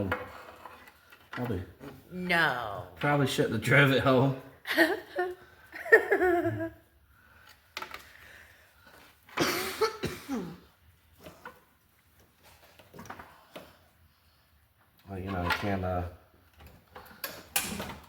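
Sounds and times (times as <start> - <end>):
person coughing: 9.4 - 10.7.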